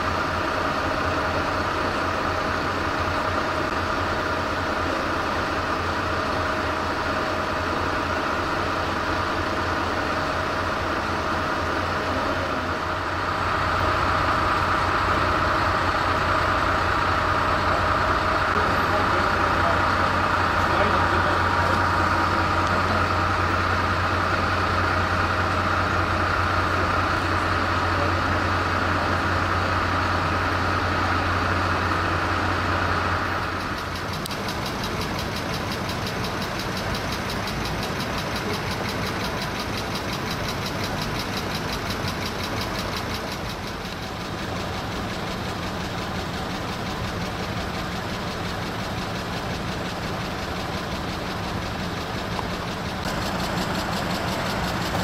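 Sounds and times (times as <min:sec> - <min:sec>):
vehicle engine idling: 0:00.0 - 0:55.0
fine rapid ticking: 0:33.4 - 0:55.0.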